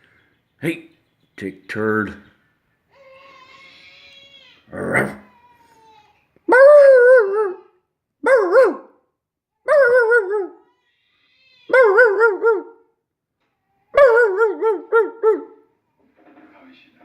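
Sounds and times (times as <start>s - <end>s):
dog bark-howling: 4.8s - 5.3s, 6.5s - 9.0s, 9.6s - 10.7s, 11.7s - 12.8s, 13.9s - 15.6s.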